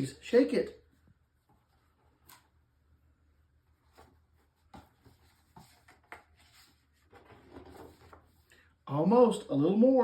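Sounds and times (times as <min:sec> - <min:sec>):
faint rustles and taps of book: 0:03.8 - 0:08.4.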